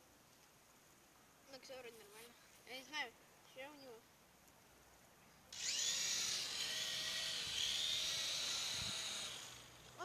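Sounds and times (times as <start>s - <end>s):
toy helicopter motor whine: 5.5s - 10.0s.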